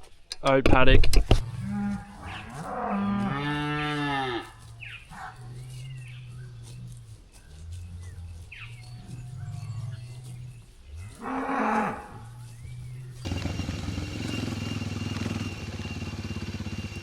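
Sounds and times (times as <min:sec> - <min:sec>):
cattle mooing: 0:01.4 - 0:06.2, 0:07.6 - 0:12.5.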